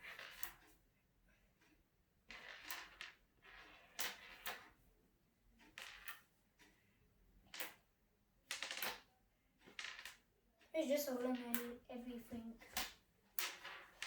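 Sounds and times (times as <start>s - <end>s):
magnetic balls clicking together: 0.0s - 0.8s, 2.2s - 4.8s, 5.6s - 6.4s, 7.4s - 14.0s.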